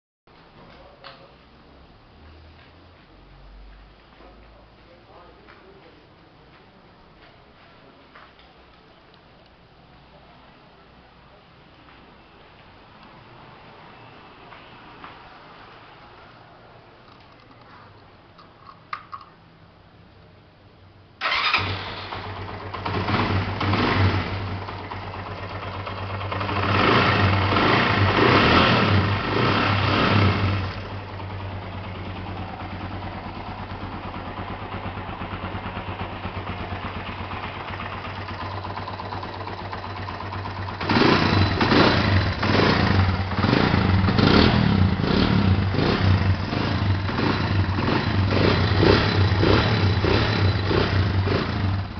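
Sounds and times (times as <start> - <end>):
motorcycle engine revving and idling: 21.2 - 51.9.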